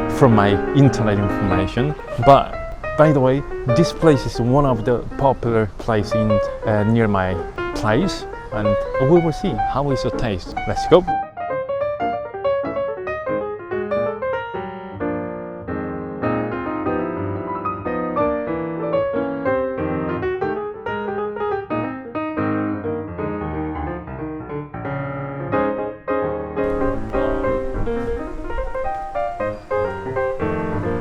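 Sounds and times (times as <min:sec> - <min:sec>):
background hiss: 0:00.0 - 0:11.2, 0:26.6 - 0:31.0
bright piano melody: 0:00.0 - 0:31.0.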